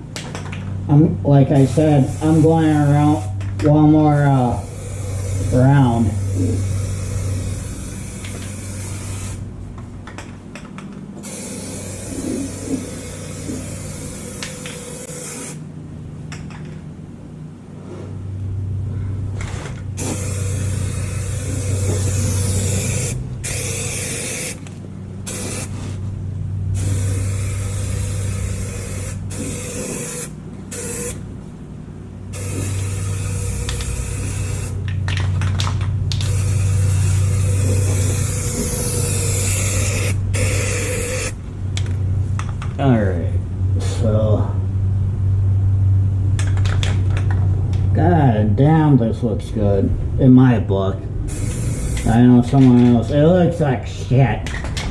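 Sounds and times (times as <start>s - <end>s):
steady low hum: 0.0s - 54.9s
aerosol can spraying: 1.6s - 3.3s, 4.6s - 9.4s, 11.2s - 15.6s, 20.0s - 24.7s, 25.3s - 25.8s, 26.8s - 31.2s, 32.4s - 34.8s, 36.2s - 41.4s, 51.3s - 52.2s.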